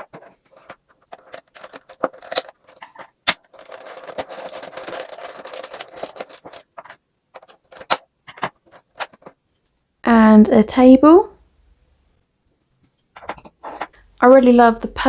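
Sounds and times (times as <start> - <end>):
plastic packaging rustling: 0.0 - 9.4.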